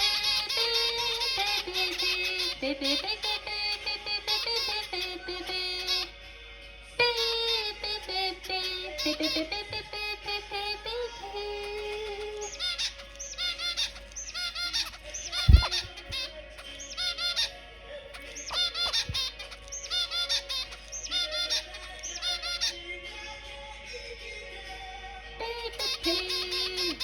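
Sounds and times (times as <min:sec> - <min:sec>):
finches honking calls: 0:00.0 - 0:06.2, 0:07.0 - 0:22.8, 0:25.4 - 0:27.0
sharp thump: 0:15.5 - 0:16.0.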